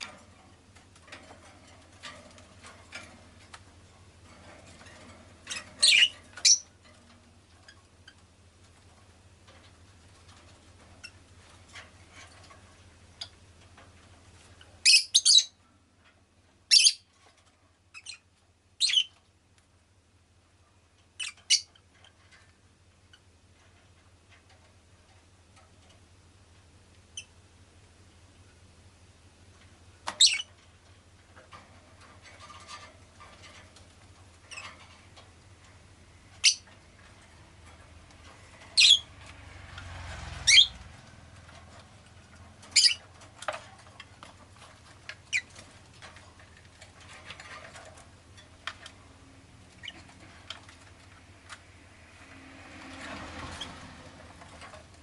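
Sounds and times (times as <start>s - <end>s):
bird chirping high-pitched: 5.8s - 6.7s, 14.8s - 15.6s, 16.7s - 17.1s, 18.0s - 19.2s, 21.2s - 21.7s, 30.2s - 30.5s, 36.4s - 36.7s, 38.8s - 39.1s, 40.5s - 40.8s, 42.7s - 43.0s.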